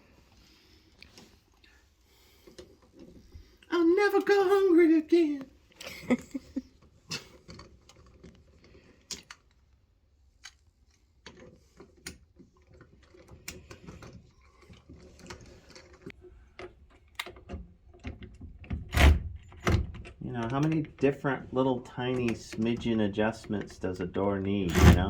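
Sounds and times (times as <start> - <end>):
door lock hardware clicking: 24.7 - 25.0.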